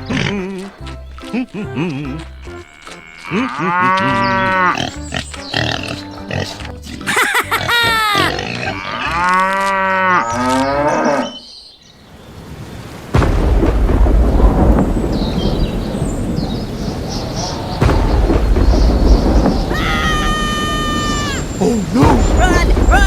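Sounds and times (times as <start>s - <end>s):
deep rumble: 13.2s - 20.2s.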